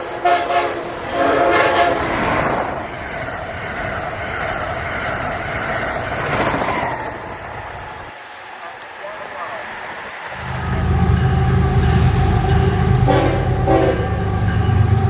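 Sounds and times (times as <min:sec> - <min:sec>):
locomotive air horn: 0:00.0 - 0:02.3, 0:10.4 - 0:14.7
train rumbling on rails: 0:00.0 - 0:15.0.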